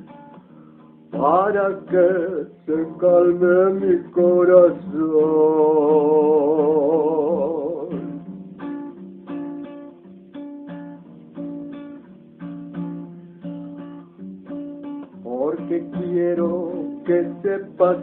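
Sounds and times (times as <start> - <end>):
acoustic guitar picking chords: 0.0 - 18.0
man singing long vibrato note: 1.2 - 8.0, 15.3 - 18.0.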